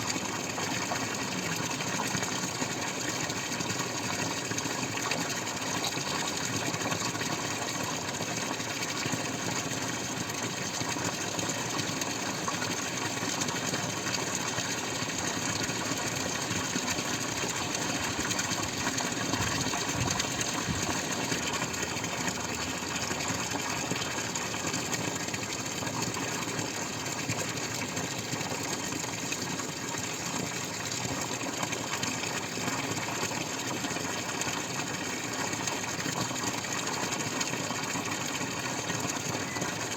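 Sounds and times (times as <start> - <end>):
water dripping and splashing: 11.8 - 39.9.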